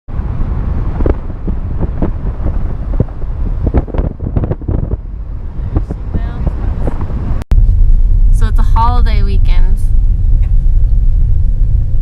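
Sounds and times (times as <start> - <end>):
wind buffeting microphone: 0.1 - 12.0.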